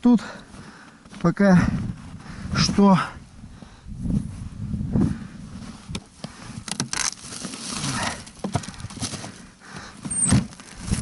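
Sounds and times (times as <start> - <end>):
fishing gear knocks and rustles: 6.0 - 9.4.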